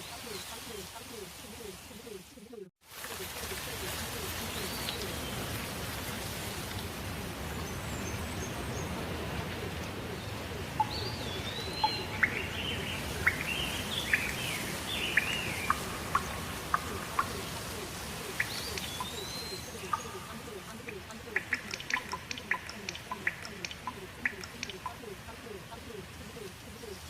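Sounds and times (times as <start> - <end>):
steady rain: 0.0 - 27.0
birds chirping and whistling: 10.8 - 25.2.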